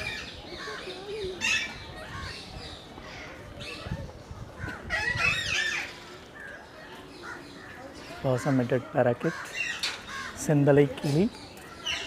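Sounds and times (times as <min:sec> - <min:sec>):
birds calling: 0:00.0 - 0:12.0.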